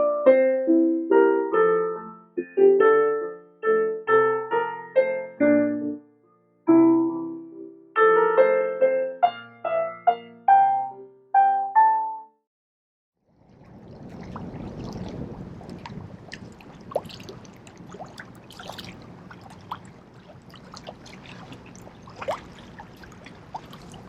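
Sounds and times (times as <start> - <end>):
solo piano music: 0.0 - 12.4.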